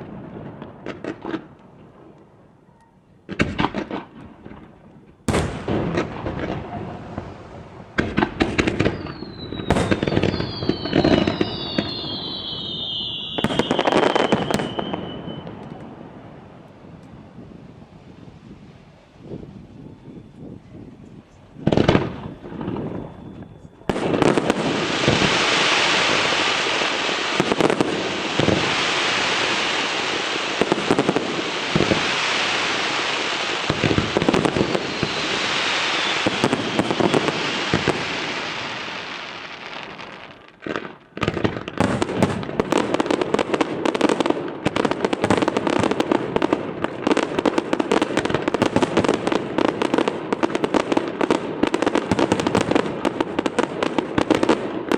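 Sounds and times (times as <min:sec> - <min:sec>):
fireworks sharp cracks: 0:00.0 - 0:02.3, 0:03.2 - 0:19.5, 0:21.5 - 0:54.9
firework bang: 0:03.3 - 0:04.7, 0:05.3 - 0:15.9, 0:21.6 - 0:39.2
fireworks crackling hiss: 0:05.2 - 0:54.9.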